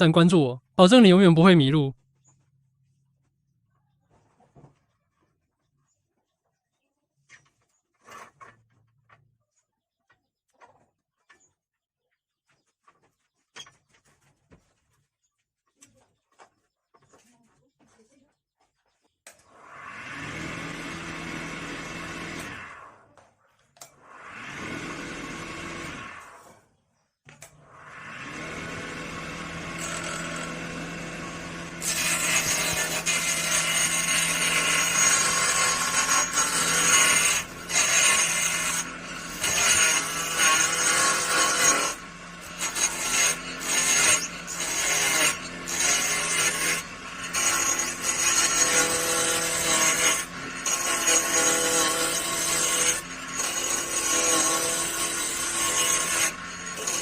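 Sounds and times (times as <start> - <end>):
electric power tool on wood: 19.3 - 23.0, 23.8 - 26.6, 27.4 - 57.0.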